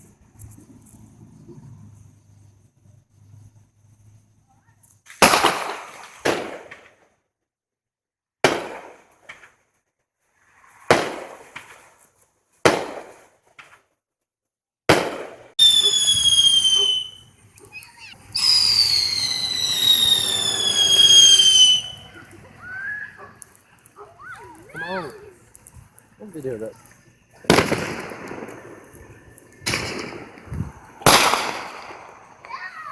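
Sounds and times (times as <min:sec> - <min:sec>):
firework bangs: 0:05.1 - 0:07.0, 0:08.4 - 0:09.5, 0:10.5 - 0:13.8, 0:14.9 - 0:32.9
firework whistles sliding down: 0:15.6 - 0:32.9.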